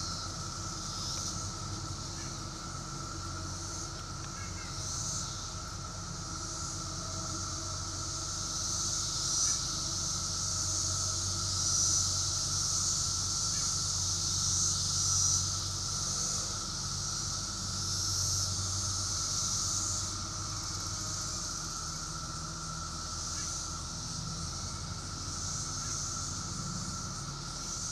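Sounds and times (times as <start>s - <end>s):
cicadas droning buzz: 0.0s - 27.9s
higher hissing cicada buzz: 0.0s - 27.9s.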